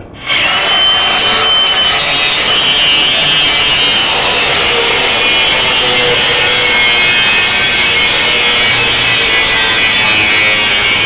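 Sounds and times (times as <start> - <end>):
angle grinder cutting metal: 0.2 - 11.0.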